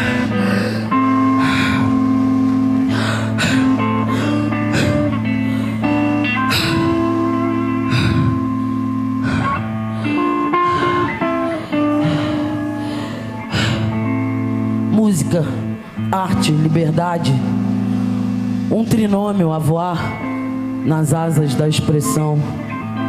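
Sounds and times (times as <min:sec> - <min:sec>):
bass line: 0:00.0 - 0:23.0
sustained electric guitars: 0:00.0 - 0:23.0.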